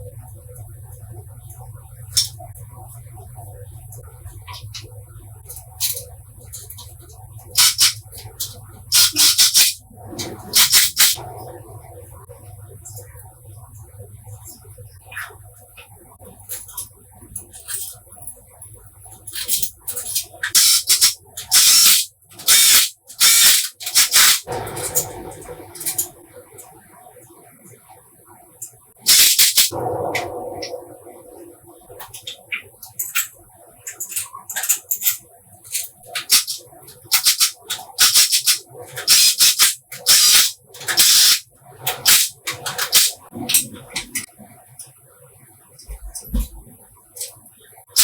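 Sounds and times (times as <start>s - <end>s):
short bursts of hissing spray: 29.1s - 29.7s.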